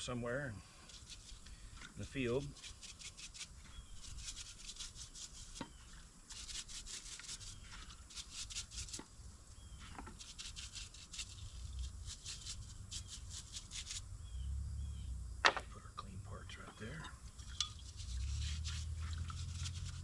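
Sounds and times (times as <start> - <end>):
scrubbing rasping strokes: 0.8 - 9.1, 9.8 - 14.0, 17.4 - 20.0.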